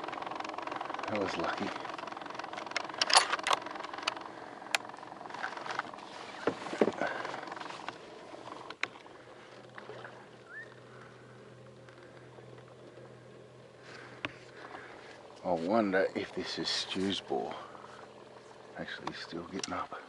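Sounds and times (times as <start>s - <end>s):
faint steady hum: 0.0s - 20.0s
kayak and paddle knocking: 3.6s - 10.6s, 18.9s - 19.8s.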